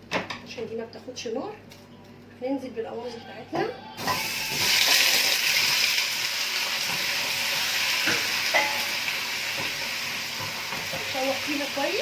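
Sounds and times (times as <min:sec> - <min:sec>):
meat sizzling in hot fat: 0:04.0 - 0:12.0.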